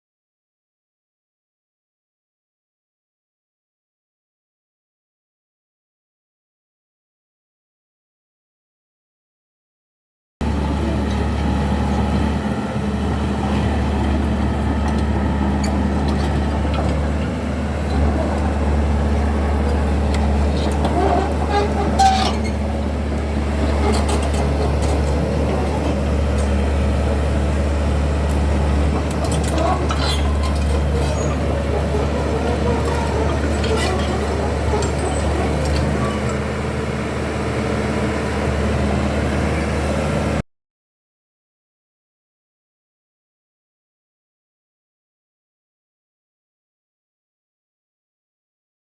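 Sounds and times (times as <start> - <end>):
bulldozer diesel engine humming: 10.4 - 40.4.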